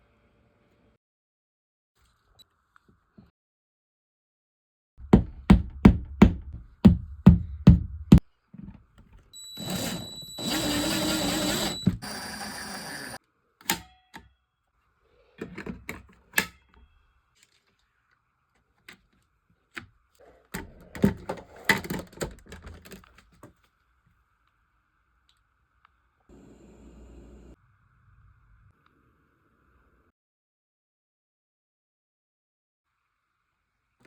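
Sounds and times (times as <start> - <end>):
plastic parts clicking and knocking: 20.6 - 23.6.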